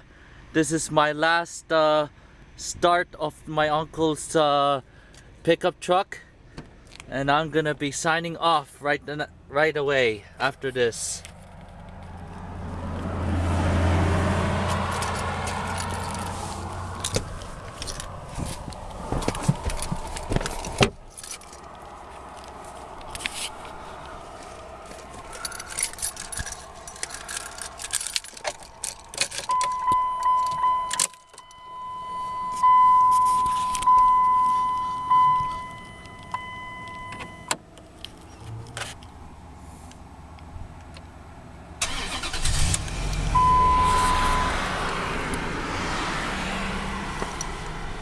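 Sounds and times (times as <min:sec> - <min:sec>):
keys jangling and clicking: 0:14.7 - 0:23.6, 0:24.4 - 0:31.6
dashboard warning chime dinging: 0:29.4 - 0:37.6, 0:43.3 - 0:44.7.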